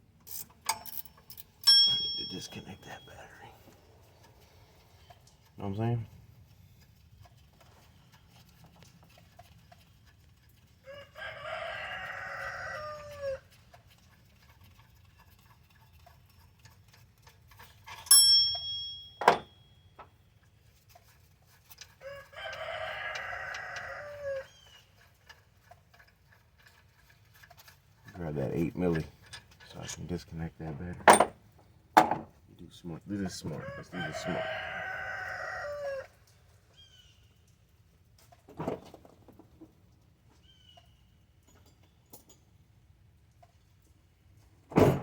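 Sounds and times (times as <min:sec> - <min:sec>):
sharp metallic clink: 0:00.3 - 0:02.8, 0:18.0 - 0:19.6
rooster crowing: 0:10.8 - 0:13.4, 0:22.0 - 0:24.5, 0:33.6 - 0:36.2.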